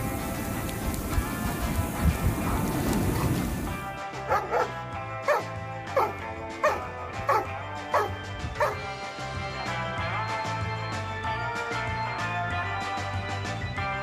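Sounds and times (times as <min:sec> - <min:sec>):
background music: 0:00.0 - 0:14.0
dog barking: 0:04.3 - 0:08.8.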